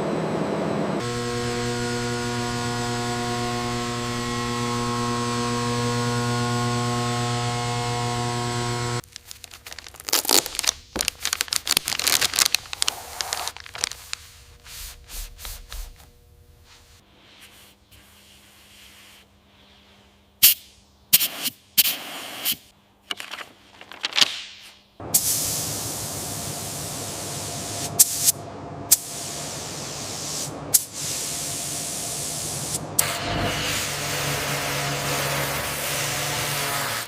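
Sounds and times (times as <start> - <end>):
compressed air spraying hiss: 17.2 - 22.7, 25.1 - 32.8.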